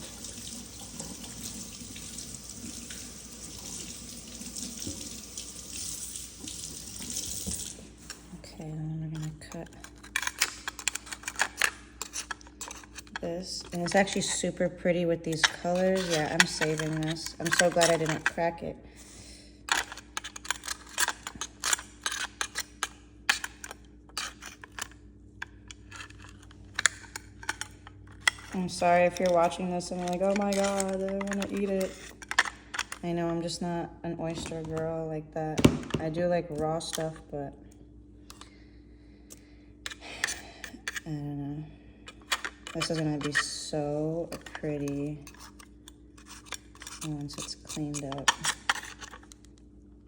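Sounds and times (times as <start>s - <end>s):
tap water running into sink: 0.0s - 7.9s.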